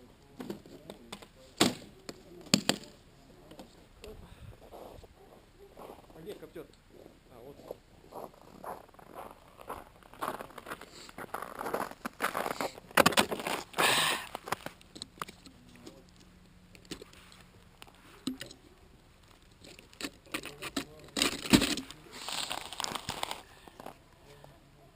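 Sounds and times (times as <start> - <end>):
handling clicks and rustling: 10.0 - 24.6.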